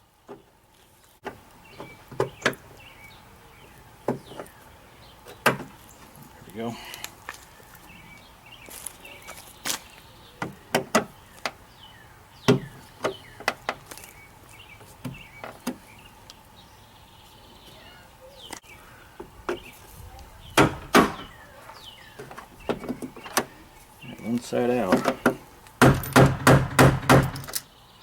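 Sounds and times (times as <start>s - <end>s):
metal clicks and knocks in door: 24.9s - 27.6s.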